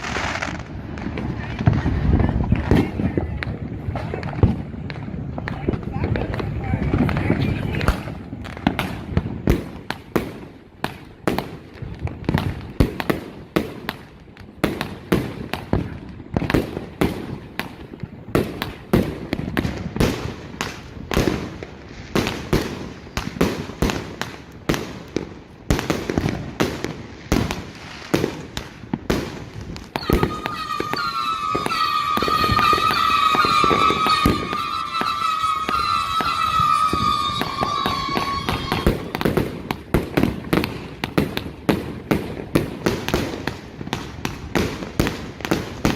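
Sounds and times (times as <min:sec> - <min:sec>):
fireworks high whistling: 0:00.0 - 0:14.0, 0:14.7 - 0:45.9
fireworks barrage bangs: 0:00.0 - 0:45.9.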